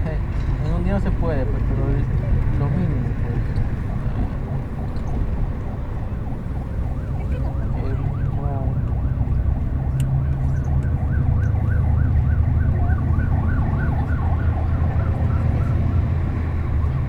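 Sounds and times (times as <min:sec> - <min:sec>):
bus engine rumble: 0:00.0 - 0:17.0
siren yelping: 0:05.4 - 0:17.0.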